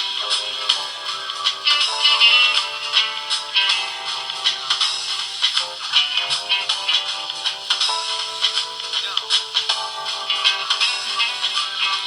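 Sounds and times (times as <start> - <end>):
polyphonic phone ringtone: 0.0 - 12.0.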